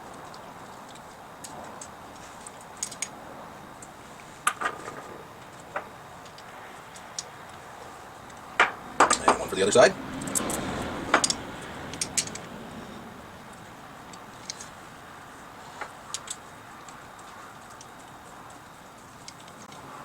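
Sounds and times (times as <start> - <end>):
small metal parts clicking: 0.0 - 3.2, 3.8 - 7.6, 10.2 - 12.5, 13.4 - 14.8, 15.8 - 19.8.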